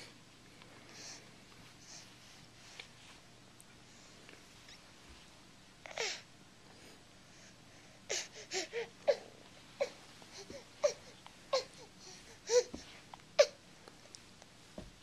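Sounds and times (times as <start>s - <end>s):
baby crying: 8.1s - 12.8s.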